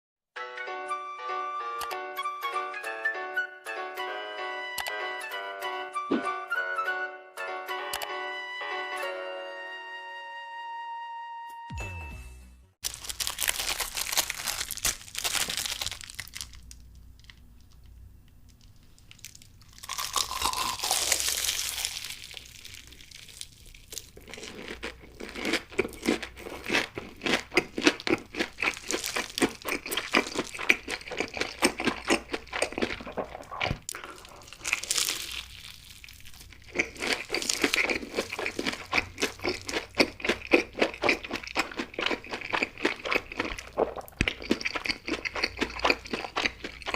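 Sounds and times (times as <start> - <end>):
rustling and tearing: 12.8 - 17.4
crunchy chewing of fried food: 12.8 - 46.9.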